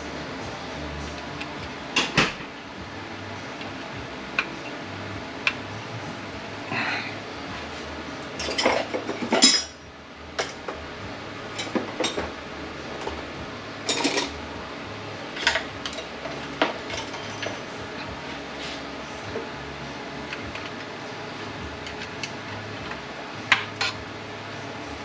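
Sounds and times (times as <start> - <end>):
metal parts and tools clinking: 8.4 - 9.8, 13.9 - 14.3, 15.4 - 17.7.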